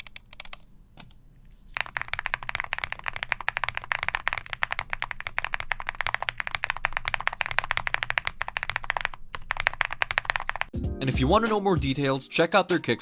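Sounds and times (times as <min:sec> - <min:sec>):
fast typing on mechanical keyboard: 0:00.0 - 0:00.6, 0:01.7 - 0:10.7.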